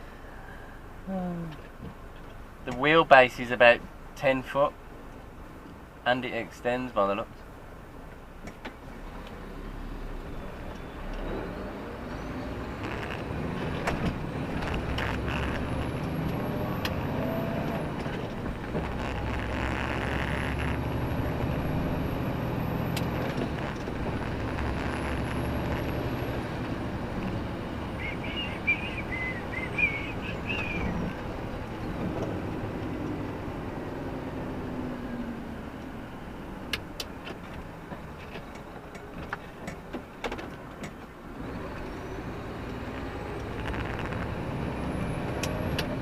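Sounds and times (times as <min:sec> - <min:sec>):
lorry diesel engine and road noise: 0:00.0 - 0:46.0
short high squeaks: 0:12.2 - 0:13.4, 0:14.6 - 0:16.3, 0:18.8 - 0:21.3.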